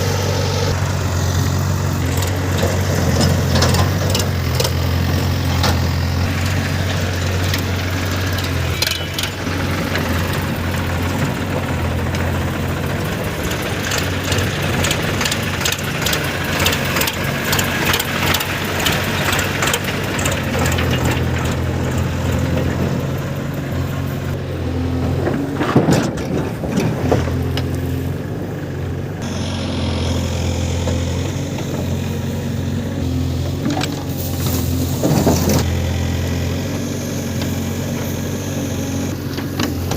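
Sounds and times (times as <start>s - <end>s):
diesel engine running: 0.0s - 39.9s
knocks and clatter: 25.0s - 27.8s.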